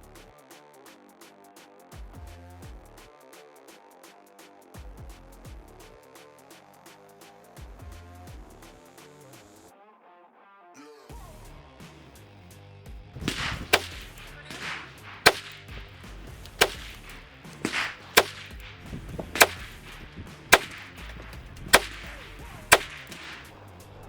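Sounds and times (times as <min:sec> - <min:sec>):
pistol shots: 0:13.3 - 0:23.5.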